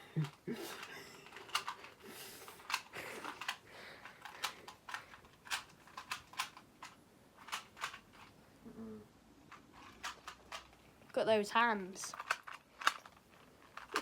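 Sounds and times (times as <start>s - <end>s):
puzzle cube clicking: 0.2s - 8.3s, 12.1s - 14.0s.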